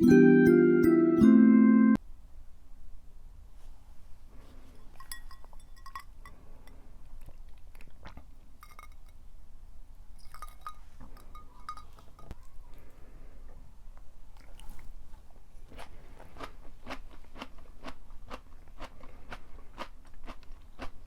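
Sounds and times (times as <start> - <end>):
utensils clinking on dishes: 4.8 - 6.4, 8.6 - 9.2, 10.2 - 12.4.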